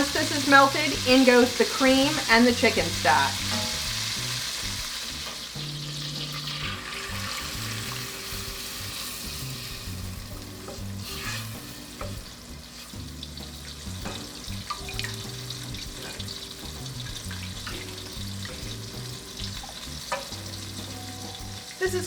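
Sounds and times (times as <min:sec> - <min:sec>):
butter sizzling in a saucepan: 0:00.0 - 0:22.0
soft background music: 0:00.0 - 0:22.0
utensil clicking against pan: 0:10.6 - 0:20.9.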